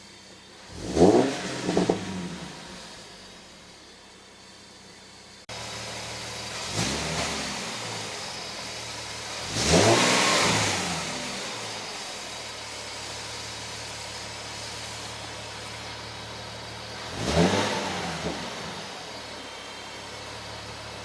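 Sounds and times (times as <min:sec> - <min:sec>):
faint high whine: 0:00.0 - 0:09.6, 0:10.7 - 0:21.0
car engine idling and revving: 0:00.0 - 0:21.0.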